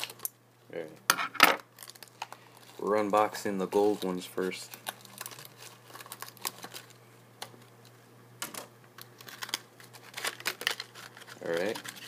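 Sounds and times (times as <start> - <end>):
packaging clicks and crinkles: 1.7 - 7.7, 8.4 - 12.0.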